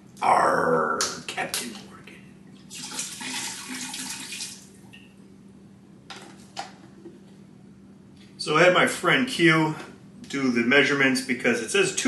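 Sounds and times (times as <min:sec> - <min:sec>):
liquid pouring from bottle: 0:02.6 - 0:04.7.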